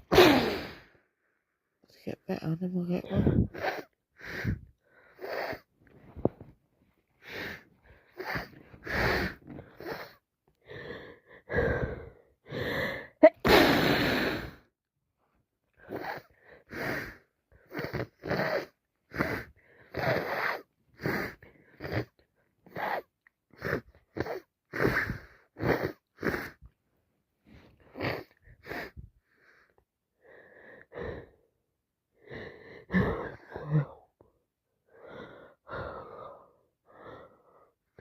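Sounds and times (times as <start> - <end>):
woman sneezing: 0.0 - 0.8, 13.2 - 14.0
gasping breaths: 3.0 - 6.4, 7.2 - 14.7, 32.2 - 34.3, 34.9 - 38.0.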